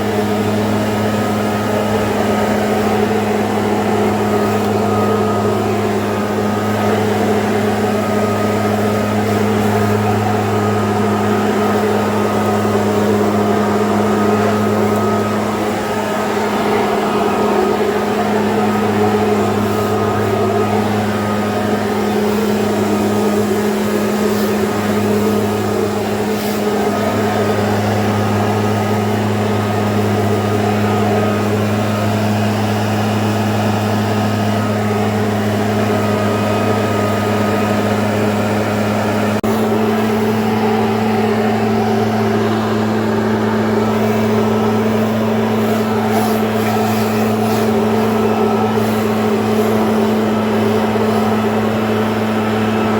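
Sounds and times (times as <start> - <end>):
motor humming: 0.0 - 52.9.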